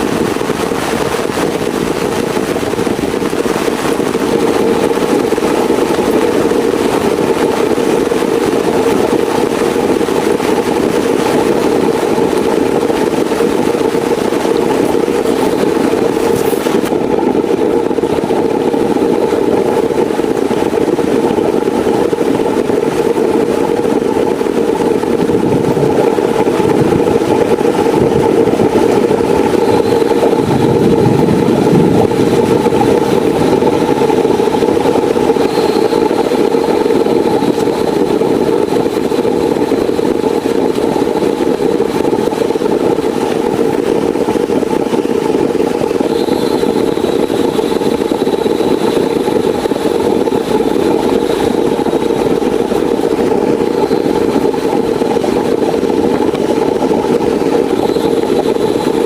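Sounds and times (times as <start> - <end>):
heavy rain: 25.4 - 37.3.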